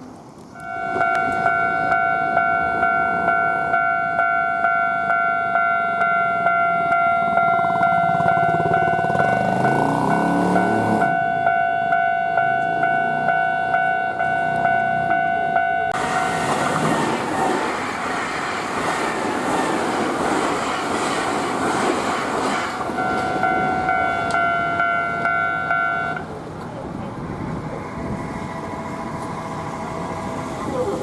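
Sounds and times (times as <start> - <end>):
train wheels on rail: 0.0 - 31.0
level-crossing alarm bell: 0.6 - 16.5, 22.9 - 26.2.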